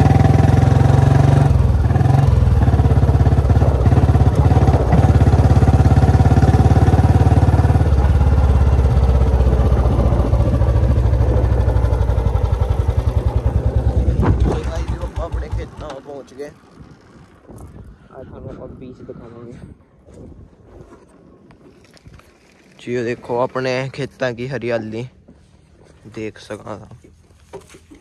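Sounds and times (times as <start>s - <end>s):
motorcycle engine thumping: 0.0s - 16.3s.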